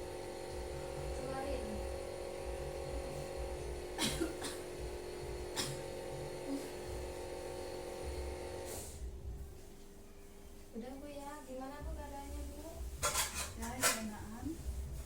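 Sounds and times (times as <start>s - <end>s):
steady hum: 0.0s - 13.1s
person coughing: 4.0s - 4.8s, 5.5s - 6.8s.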